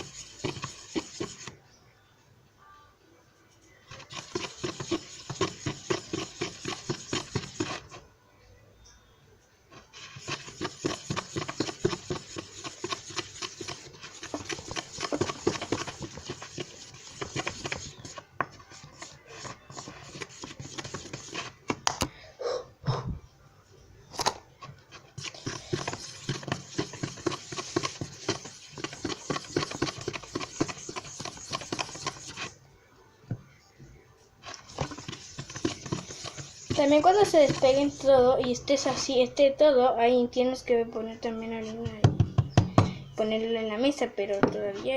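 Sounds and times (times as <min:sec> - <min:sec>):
dough squelching by hand: 0:00.0 - 0:01.6, 0:03.9 - 0:08.0, 0:09.7 - 0:22.0, 0:24.6 - 0:32.6, 0:34.4 - 0:39.2.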